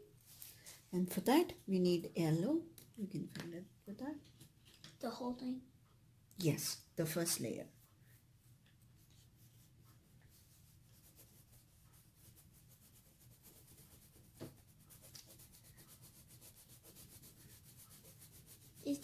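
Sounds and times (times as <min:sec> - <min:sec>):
pencil scratching on paper: 0:08.9 - 0:19.0.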